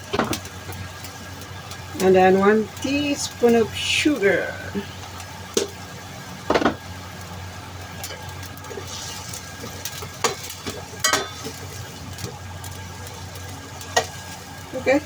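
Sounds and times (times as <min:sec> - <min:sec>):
low hum: 0:00.0 - 0:15.0
utensil clattering against pan: 0:11.0 - 0:11.6.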